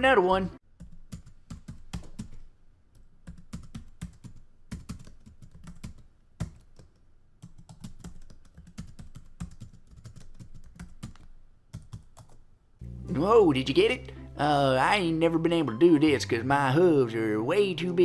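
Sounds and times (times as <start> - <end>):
computer keyboard typing: 0.8 - 12.5.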